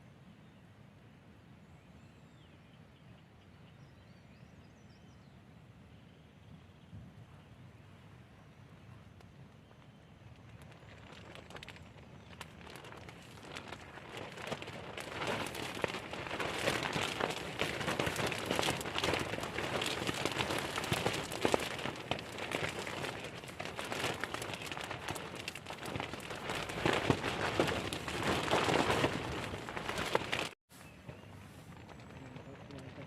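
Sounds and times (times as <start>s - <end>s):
rain pattering: 9.5s - 30.6s, 31.7s - 33.0s.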